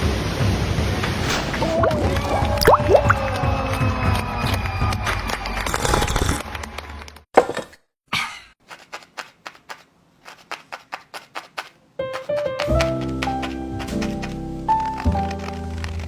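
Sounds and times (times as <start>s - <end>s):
background music: 12.0s - 16.0s.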